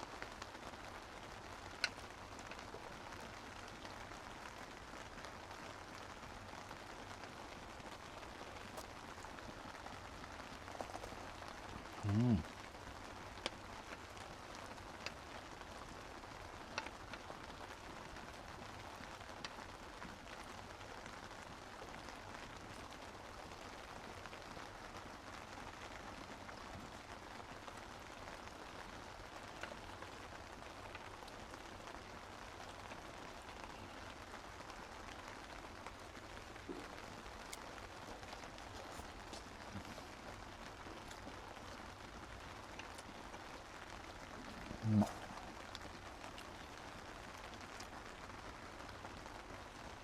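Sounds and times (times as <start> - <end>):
steady rain falling: 0.0 - 50.0
single louder raindrop: 28.8 - 50.0.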